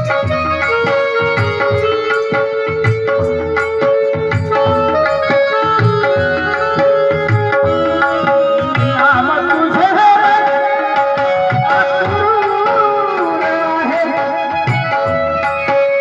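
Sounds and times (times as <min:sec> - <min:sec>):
tabla playing a rhythm: 0:00.0 - 0:16.0
person singing: 0:06.0 - 0:15.1.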